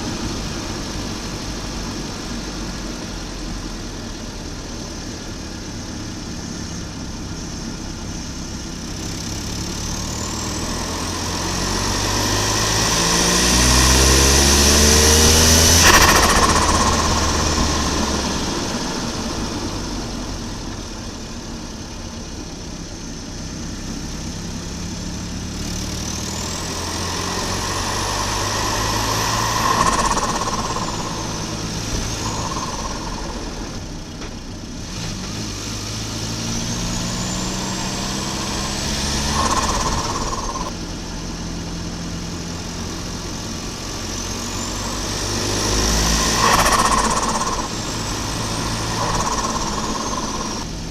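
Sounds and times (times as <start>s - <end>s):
turbocharged car engine pulling hard: 0.0s - 50.9s
turbo flutter: 9.2s - 20.9s, 25.9s - 34.2s, 36.0s - 40.8s, 42.9s - 50.8s
turbo whistle: 9.9s - 20.0s, 26.2s - 33.9s, 36.2s - 40.7s, 44.1s - 50.7s.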